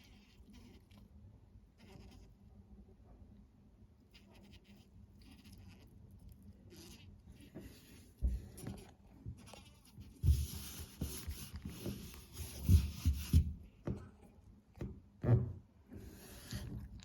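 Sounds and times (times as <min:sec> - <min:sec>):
rubbing and scraping: 0:07.5 - 0:13.6.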